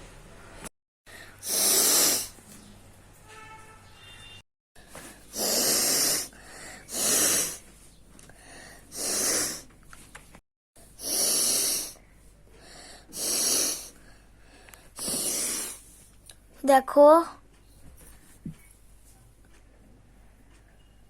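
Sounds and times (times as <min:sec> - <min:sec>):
woman blowing her nose: 0:01.4 - 0:02.4, 0:05.3 - 0:07.6, 0:08.9 - 0:09.7, 0:11.0 - 0:12.0, 0:13.1 - 0:13.9, 0:15.0 - 0:15.9.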